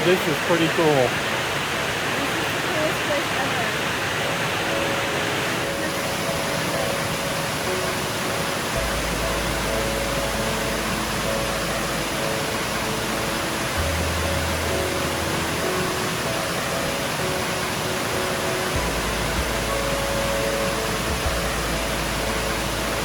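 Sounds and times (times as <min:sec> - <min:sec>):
waterfall rushing: 0:00.0 - 0:23.0
slow held music notes: 0:04.4 - 0:23.0
deep bass note: 0:21.0 - 0:23.0.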